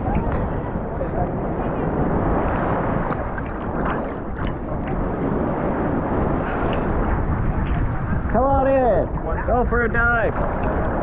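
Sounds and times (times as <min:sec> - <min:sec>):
wind buffeting microphone: 0:00.0 - 0:11.0
water sloshing and splashing: 0:03.0 - 0:05.1.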